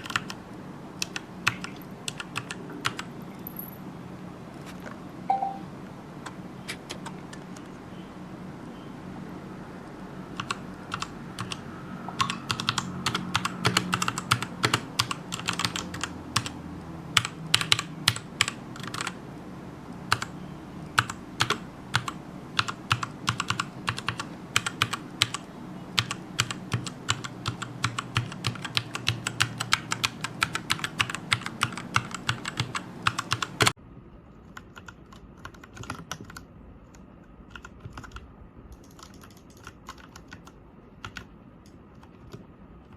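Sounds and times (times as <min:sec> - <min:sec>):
mechanical keyboard typing: 0:00.0 - 0:00.4, 0:01.0 - 0:03.1, 0:10.4 - 0:16.6, 0:17.2 - 0:19.2, 0:20.1 - 0:20.3, 0:21.0 - 0:33.8, 0:34.4 - 0:42.9.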